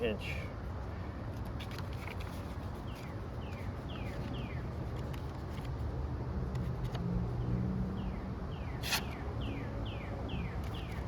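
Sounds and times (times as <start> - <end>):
bird chirping: 2.8 - 4.9, 7.4 - 11.0.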